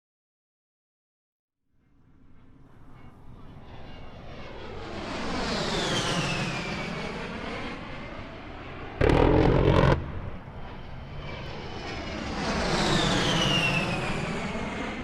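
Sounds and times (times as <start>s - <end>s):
high whine falling in pitch: 9.0s - 10.8s
armoured vehicle driving past: 9.0s - 11.0s.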